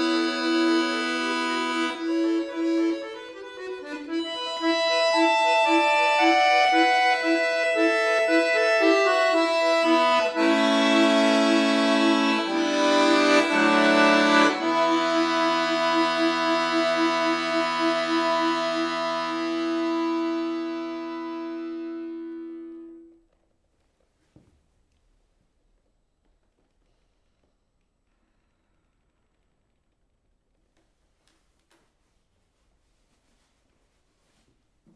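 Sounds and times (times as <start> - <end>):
accordion playing classical piece: 0.0 - 23.2.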